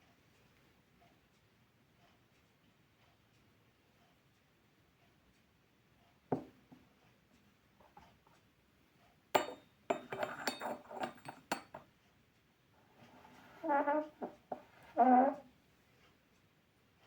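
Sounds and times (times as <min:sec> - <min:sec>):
teapot soft knock: 0:06.3 - 0:06.5
porcelain clinking: 0:09.3 - 0:11.9.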